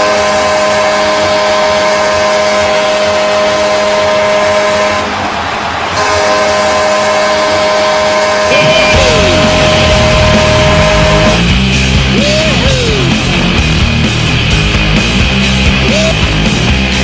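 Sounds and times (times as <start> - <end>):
goal horn blaring: 0.0 - 5.3, 6.0 - 11.5.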